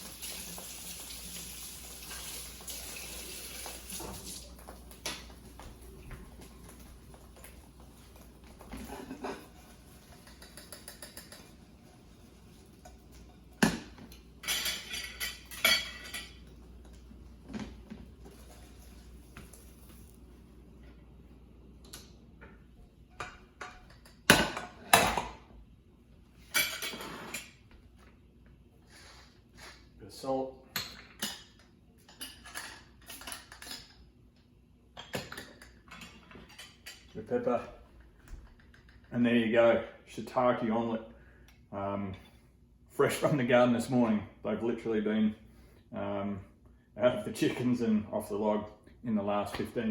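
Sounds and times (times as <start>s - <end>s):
kitchen tap running: 0.0s - 5.7s
cutlery and dishes clattering: 8.7s - 11.7s, 14.4s - 16.5s, 26.5s - 27.6s, 30.8s - 34.0s.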